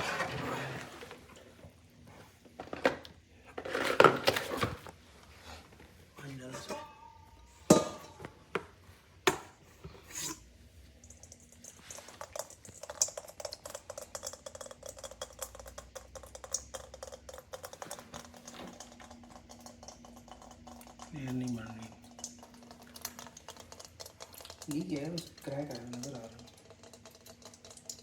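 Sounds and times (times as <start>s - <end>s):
water pouring into plastic tank: 11.0s - 28.0s.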